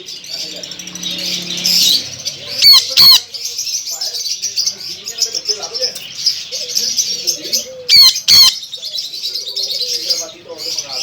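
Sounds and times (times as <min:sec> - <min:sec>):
many birds chirping: 0:00.0 - 0:11.0
parrot shrill screeches: 0:02.6 - 0:03.3, 0:07.9 - 0:08.6.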